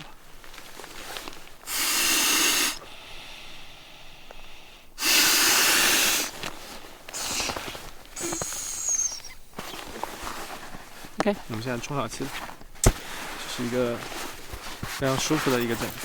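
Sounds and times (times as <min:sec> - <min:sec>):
person blowing into pillow valve: 0:01.6 - 0:10.6.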